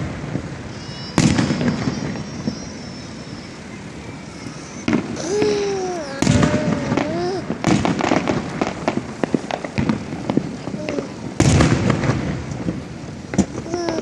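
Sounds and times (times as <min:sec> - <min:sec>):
fireworks booming: 0:00.0 - 0:14.0
fireworks crackling and whistling: 0:00.0 - 0:14.0
person calling out: 0:05.2 - 0:07.5.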